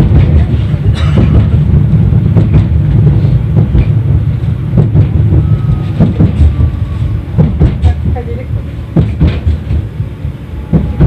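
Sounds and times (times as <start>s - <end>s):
tram wheels rumbling on rails: 0.0s - 11.0s
sharp knocks: 7.4s - 8.1s, 8.9s - 9.9s.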